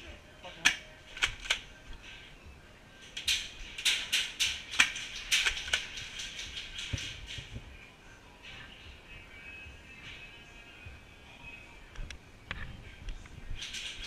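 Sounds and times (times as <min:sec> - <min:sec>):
airsoft guns popping: 0:00.6 - 0:01.6, 0:03.2 - 0:07.6.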